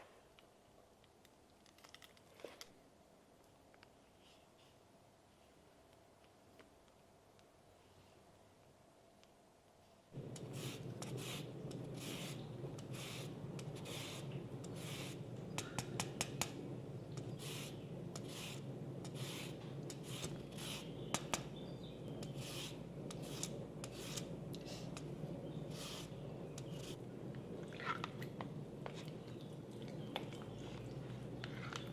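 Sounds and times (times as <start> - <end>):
steady low hum: 10.1 - 31.9
rasping rubbing strokes: 17.1 - 27.0.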